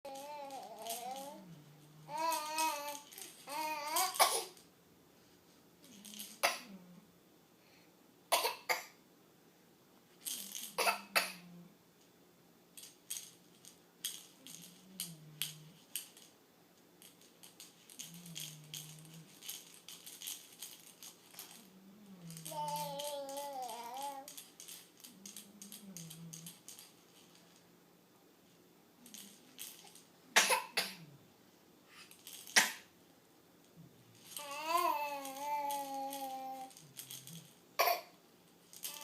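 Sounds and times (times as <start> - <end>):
wavering baby voice: 0.1 - 4.2, 22.2 - 24.4, 34.4 - 36.9
baby rattle shaking: 0.1 - 4.6, 5.8 - 6.6, 10.2 - 11.2, 12.7 - 16.4, 17.0 - 27.6, 29.0 - 30.6, 32.0 - 32.8, 34.2 - 39.0
baby coughing: 4.0 - 4.6, 8.3 - 9.0, 10.8 - 11.5, 30.4 - 31.1, 32.5 - 32.9, 37.8 - 38.2.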